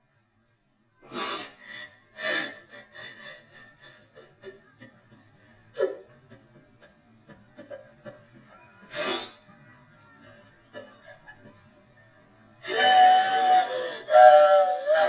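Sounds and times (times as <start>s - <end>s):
woman crying and sobbing: 1.3s - 5.0s, 12.6s - 15.0s.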